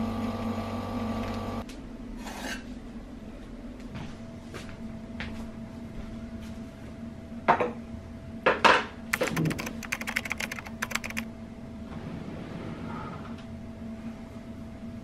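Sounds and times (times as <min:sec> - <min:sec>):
keyboard typing clicks: 0:09.1 - 0:11.2.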